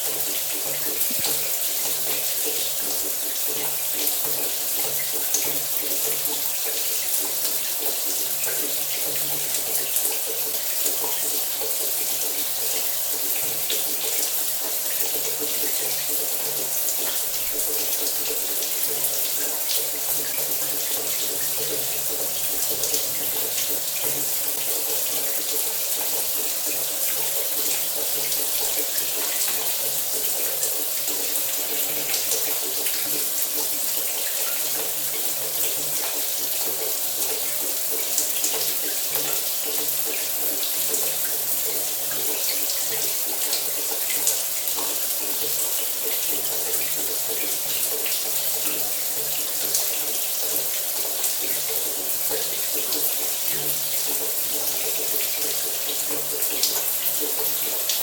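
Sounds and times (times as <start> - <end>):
shower water spraying: 0.3 - 3.5.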